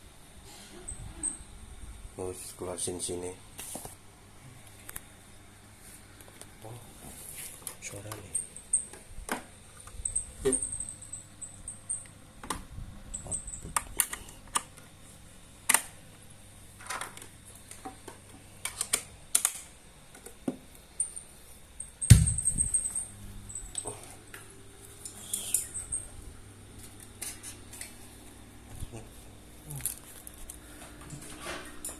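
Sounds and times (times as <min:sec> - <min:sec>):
heavy thump: 0:22.1 - 0:22.6.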